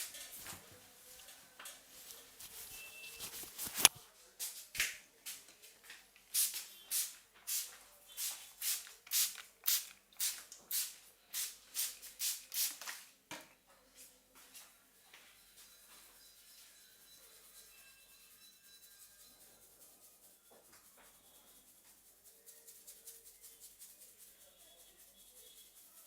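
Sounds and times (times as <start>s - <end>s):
fingers rubbing through hair: 0.0s - 4.0s, 18.7s - 26.0s.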